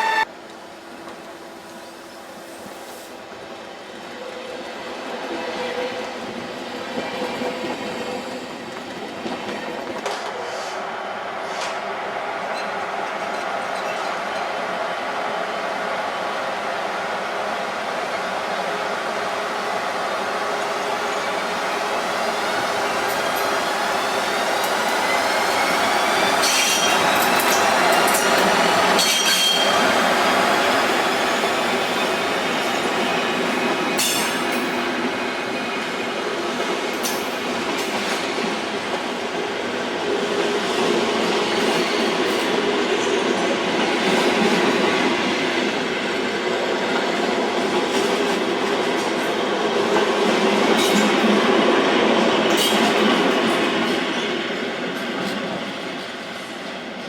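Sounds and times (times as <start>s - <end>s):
high wheel squeal: 0.0s - 0.2s
train rumbling on rails: 0.0s - 57.0s.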